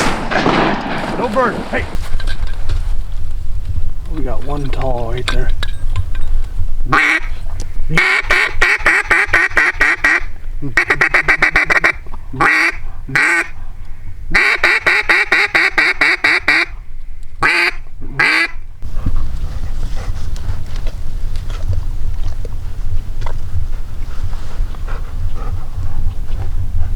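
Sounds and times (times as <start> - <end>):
wind rumbling on microphone: 0.0 - 14.4, 16.7 - 26.9
duck call quacks: 6.9 - 7.3, 8.0 - 13.5, 14.4 - 16.7, 17.4 - 18.6.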